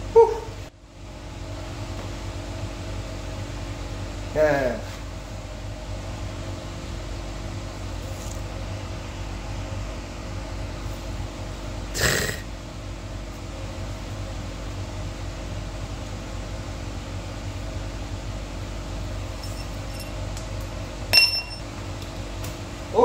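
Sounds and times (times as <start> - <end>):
steady low hum: 0.0 - 23.0
light metallic clinks: 19.4 - 20.2, 21.1 - 21.6
ringing metal clank: 19.4 - 20.2, 21.1 - 21.6.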